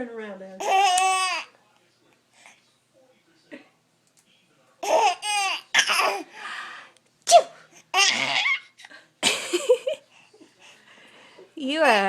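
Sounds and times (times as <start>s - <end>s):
laughter: 9.2s - 10.0s.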